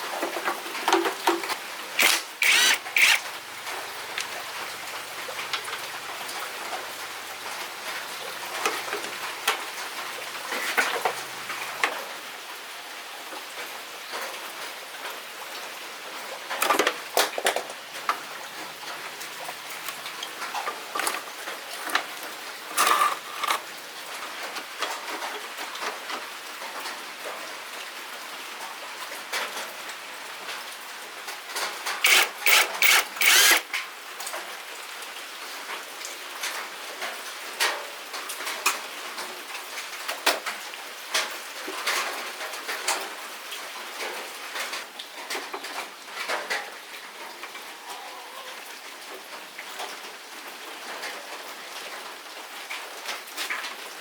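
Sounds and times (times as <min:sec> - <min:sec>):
scratching and rubbing on parts: 0:01.3 - 0:03.2, 0:20.9 - 0:23.7, 0:32.0 - 0:33.6.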